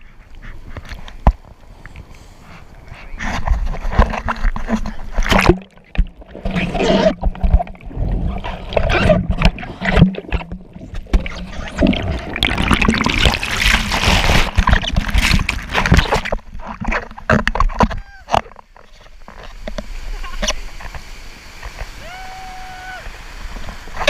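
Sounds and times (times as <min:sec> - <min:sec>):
sea water splashing and rushing: 0:03.8 - 0:24.0.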